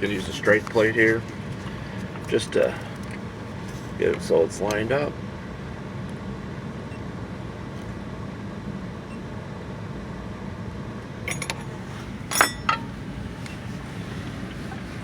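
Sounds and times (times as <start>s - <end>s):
steady low machine hum: 0.0s - 15.0s
metal clinks and clicks: 11.3s - 12.9s.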